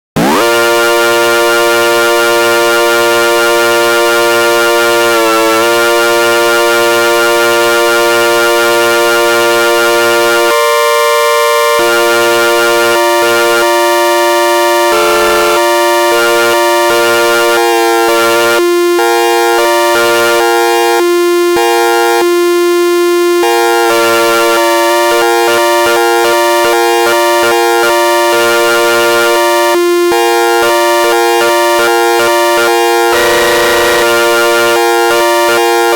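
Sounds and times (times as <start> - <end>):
held low synthesized note: 0.2 - 10.6, 11.6 - 17.5, 31.6 - 35.9
synthesized chord notes switching: 0.2 - 21.5, 23.6 - 35.9.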